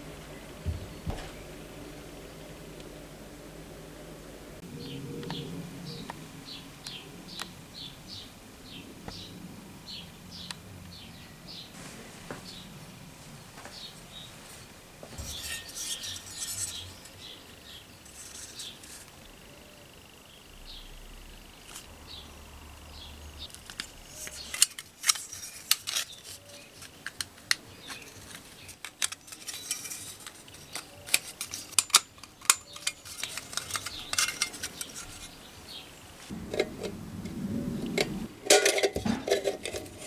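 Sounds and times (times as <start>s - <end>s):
small metal parts clinking: 15.2s - 19.1s, 23.5s - 35.4s.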